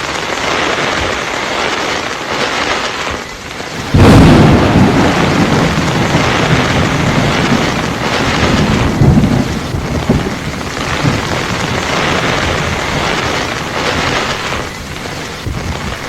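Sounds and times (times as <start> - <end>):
heavy rain pouring: 0.0 - 16.0
thunder rumbling: 3.7 - 16.0.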